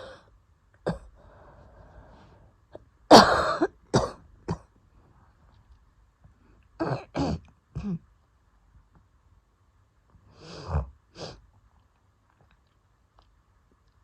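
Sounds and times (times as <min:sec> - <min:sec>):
person coughing harshly: 0:03.1 - 0:04.7, 0:06.8 - 0:08.0.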